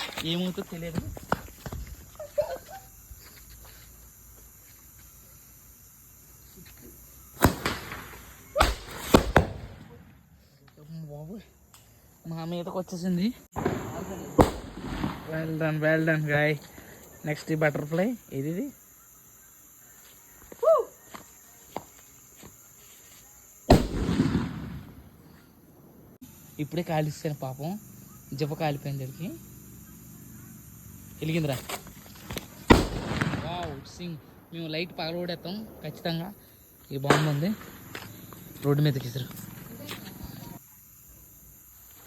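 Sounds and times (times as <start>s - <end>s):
firecracker bang and cracks: 7.4s - 10.2s, 13.5s - 15.7s, 23.7s - 25.2s, 31.7s - 34.0s, 37.0s - 38.1s.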